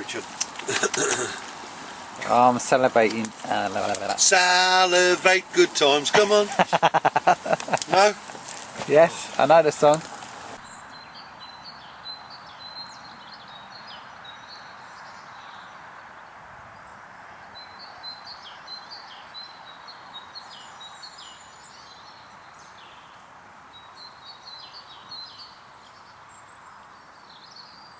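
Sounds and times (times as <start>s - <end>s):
steady background hiss: 0.0s - 10.8s.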